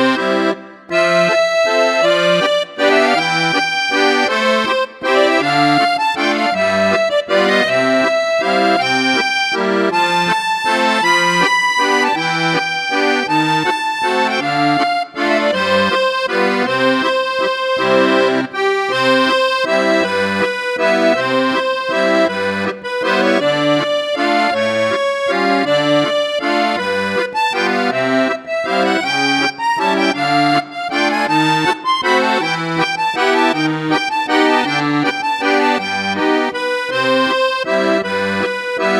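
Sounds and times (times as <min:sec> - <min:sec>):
accordion music: 0:00.0 - 0:38.9.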